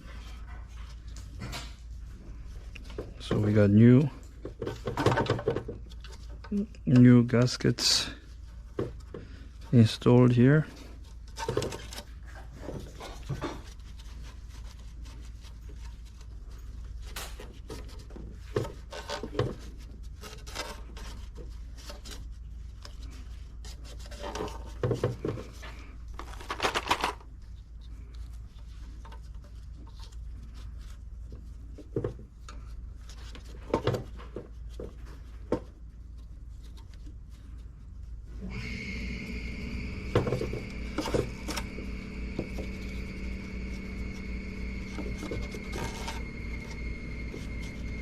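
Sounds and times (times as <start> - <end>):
steady low hum: 34.2 - 48.0.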